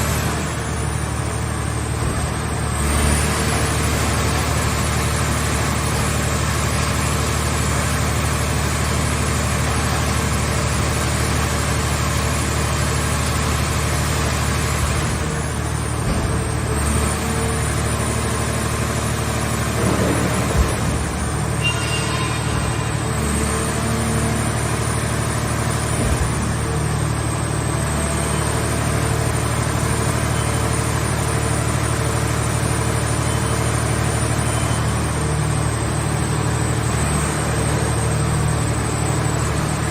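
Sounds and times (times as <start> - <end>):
metallic squeak: 19.8 - 24.7.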